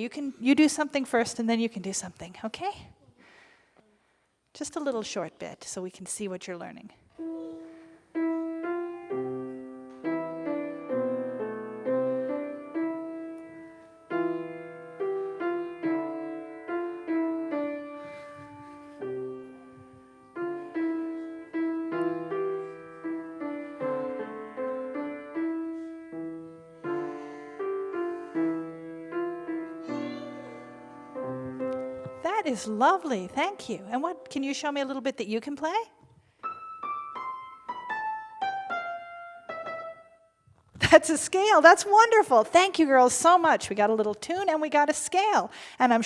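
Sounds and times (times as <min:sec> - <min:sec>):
child playing piano: 0:07.2 - 0:32.3, 0:36.4 - 0:40.2.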